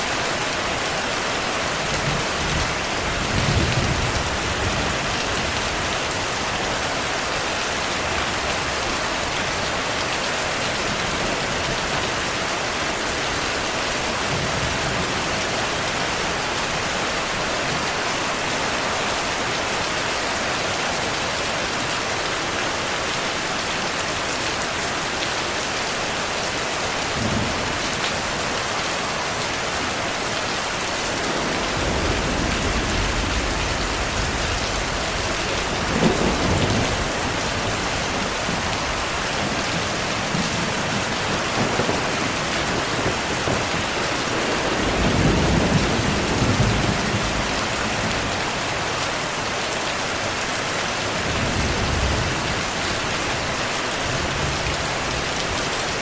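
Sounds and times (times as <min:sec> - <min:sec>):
heavy rain: 0:00.0 - 0:56.0
distant thunder rumbles: 0:31.1 - 0:48.4.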